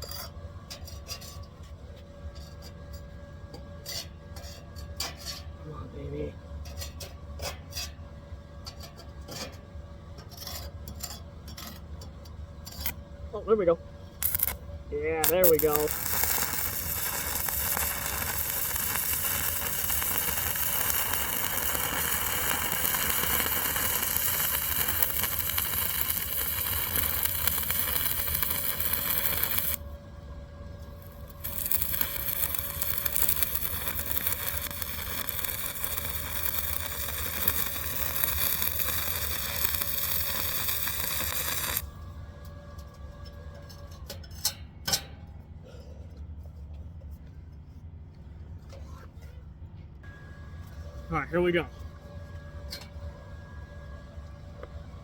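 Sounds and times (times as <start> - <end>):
welding arc crackling: 14.2 - 14.6, 15.2 - 29.9, 30.9 - 41.9.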